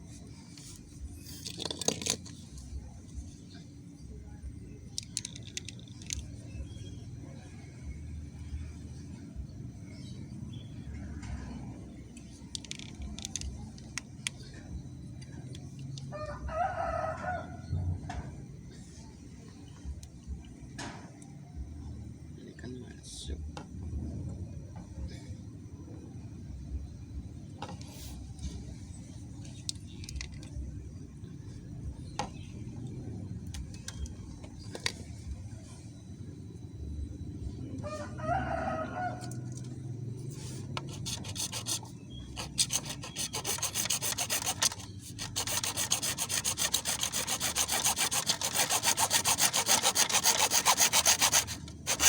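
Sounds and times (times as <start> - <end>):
low background rumble: 0.0 - 52.0
rooster crowing: 16.1 - 17.7, 37.8 - 39.5
steady low rumble: 23.3 - 38.2.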